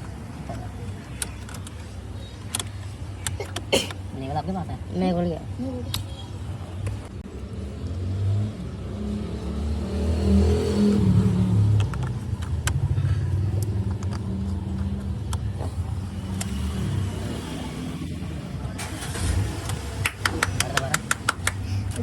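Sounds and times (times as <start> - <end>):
sharp clicks: 2.4 - 4.0
car engine revving: 7.4 - 14.8, 15.5 - 22.0.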